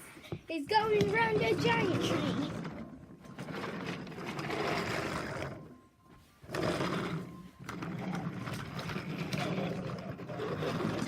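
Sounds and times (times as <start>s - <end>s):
child making engine noises: 0.6s - 2.7s.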